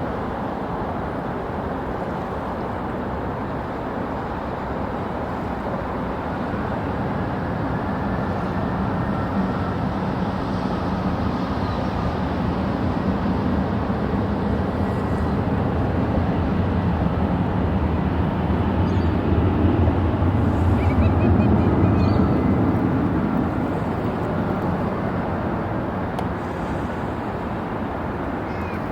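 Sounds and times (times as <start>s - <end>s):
jet engines rumbling: 5.6s - 28.9s.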